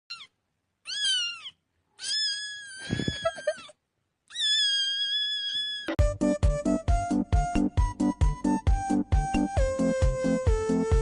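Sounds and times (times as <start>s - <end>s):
cat meowing: 0.1s - 3.7s, 4.3s - 6.0s
upbeat electronic music: 6.0s - 11.0s.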